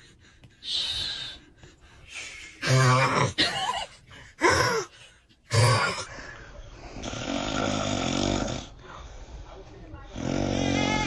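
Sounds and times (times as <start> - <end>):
man snoring loudly: 7.0 - 8.7, 10.1 - 11.0.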